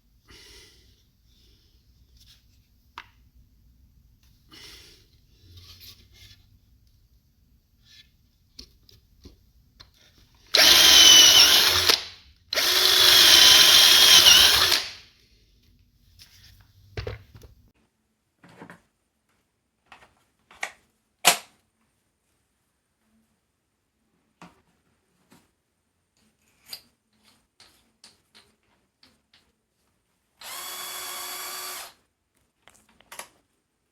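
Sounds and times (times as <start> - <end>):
cordless drill motor whine: 10.6 - 12.0, 12.6 - 15.0, 30.4 - 32.0.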